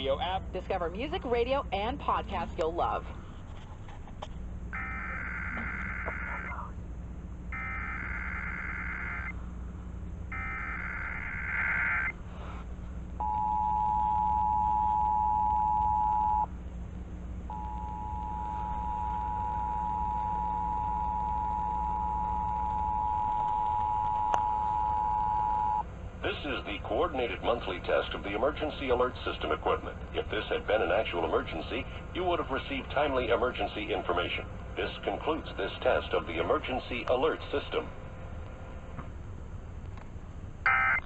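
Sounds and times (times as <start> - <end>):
steady low hum: 0.0 - 41.0
screeching data tones: 4.7 - 6.8, 7.5 - 9.4, 10.3 - 12.2, 17.5 - 25.8, 40.6 - 41.0
two-tone attention signal: 4.8 - 6.6, 7.6 - 9.3, 10.3 - 12.1, 13.2 - 16.5, 17.5 - 25.8, 40.7 - 41.0.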